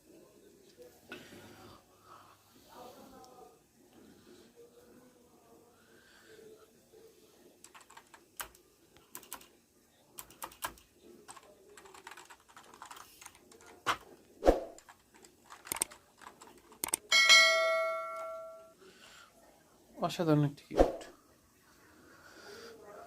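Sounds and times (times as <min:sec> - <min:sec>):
keyboard typing clicks: 0:07.6 - 0:09.5, 0:10.2 - 0:14.0, 0:14.8 - 0:17.1
bell-like ding: 0:17.1 - 0:18.7.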